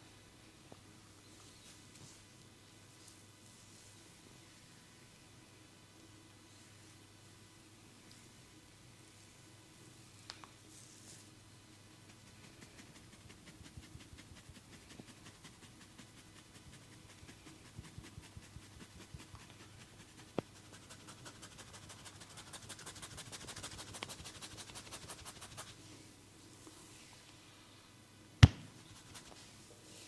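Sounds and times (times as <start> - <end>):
hands rubbing a head: 12.0 - 25.8, 28.8 - 30.0.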